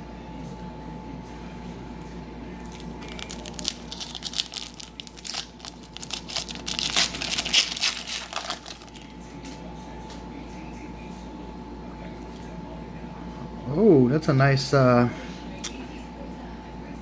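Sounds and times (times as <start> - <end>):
foil wrapper tearing and crinkling: 2.6 - 9.1.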